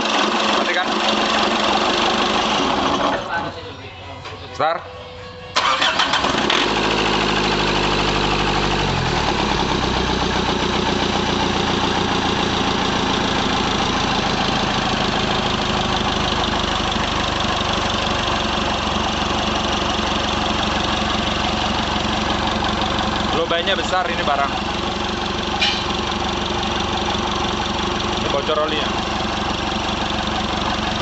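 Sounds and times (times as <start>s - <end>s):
diesel engine clattering idle: 0.0s - 4.5s, 5.5s - 31.0s.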